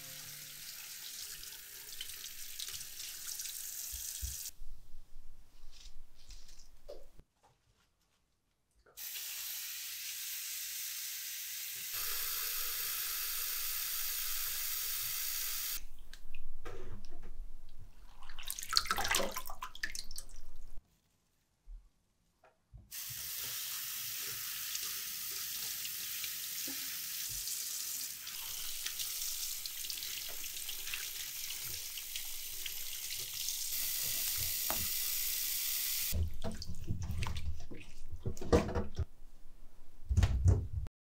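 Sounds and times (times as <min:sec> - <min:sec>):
items knocking and clattering: 0:36.2 - 0:39.1.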